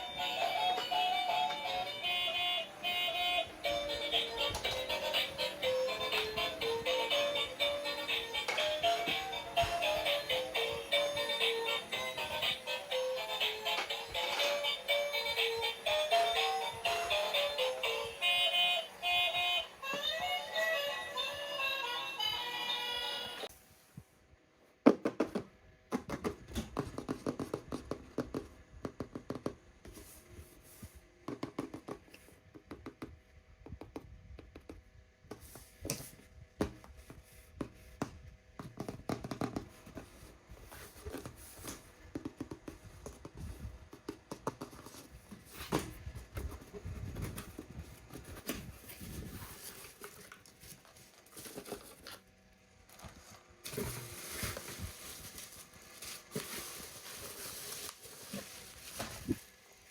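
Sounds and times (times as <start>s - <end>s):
packaging handling noises: 39.7s - 59.9s.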